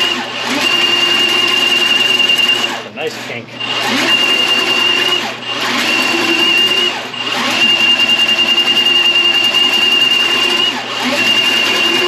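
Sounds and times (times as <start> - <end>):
drain-cleaning machine motor whine: 0.0 - 12.0.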